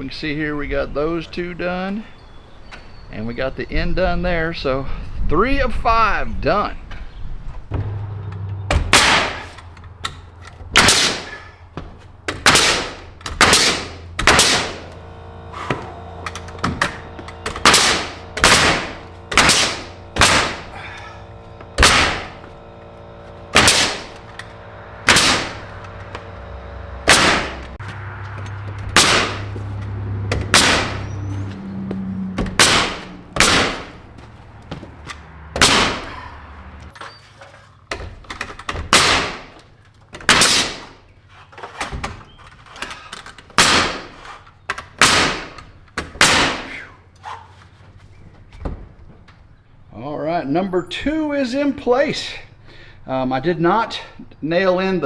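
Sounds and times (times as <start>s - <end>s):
steady low hum: 3.9s - 37.0s
nail gun shots into wood: 8.7s - 11.6s, 12.3s - 15.0s, 15.6s - 21.0s, 21.7s - 22.5s, 23.5s - 24.5s, 25.1s - 25.9s, 27.1s - 27.8s, 28.9s - 29.5s, 30.3s - 31.2s, 32.4s - 34.0s, 35.6s - 36.2s, 37.9s - 41.0s, 43.5s - 46.9s.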